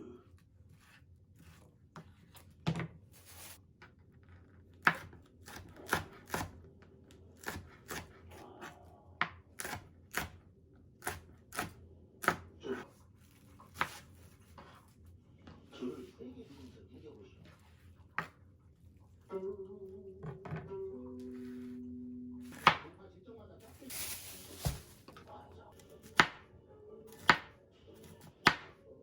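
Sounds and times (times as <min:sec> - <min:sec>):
knife chopping on cutting board: 0:04.8 - 0:06.5, 0:07.4 - 0:08.1, 0:09.2 - 0:10.4, 0:11.0 - 0:12.5, 0:22.5 - 0:22.8, 0:26.0 - 0:26.4, 0:27.1 - 0:28.8.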